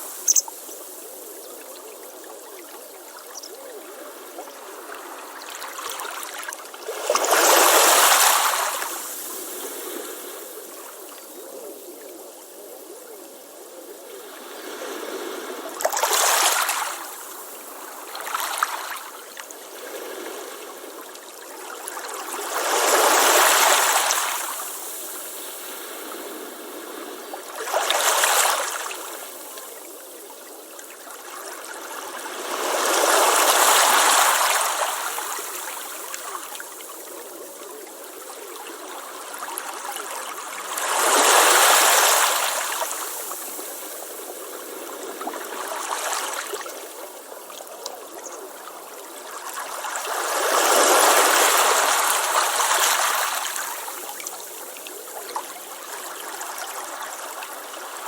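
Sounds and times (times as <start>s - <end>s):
surf washing: 31.2s - 47.4s, 48.4s - 58.0s.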